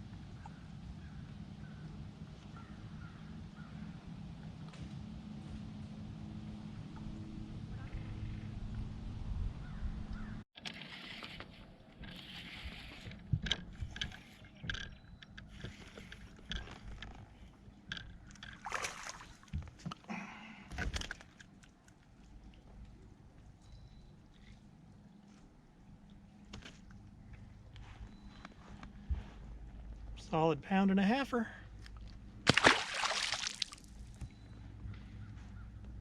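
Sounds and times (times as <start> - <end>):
water splashing against boat: 18.4 - 20.0, 32.5 - 34.2.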